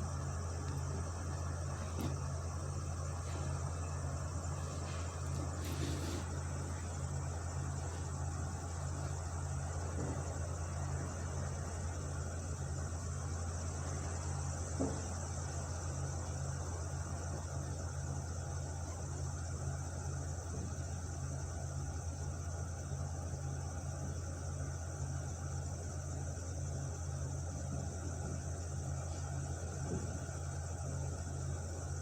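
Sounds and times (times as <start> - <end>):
steady high hiss: 0.0 - 14.4
distant truck engine running: 0.0 - 17.6.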